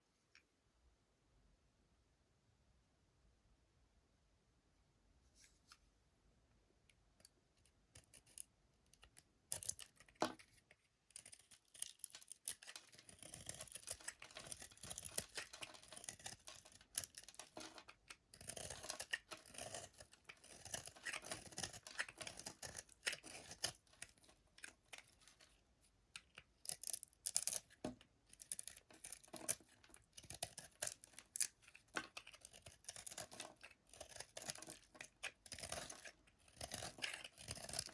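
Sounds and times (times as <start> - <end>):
blade scraping bar soap: 7.9 - 37.9.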